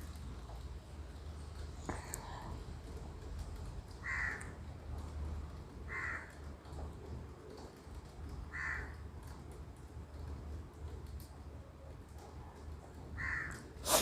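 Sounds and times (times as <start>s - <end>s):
crow cawing: 4.0s - 4.5s, 5.9s - 6.3s, 8.5s - 9.0s, 13.2s - 13.6s.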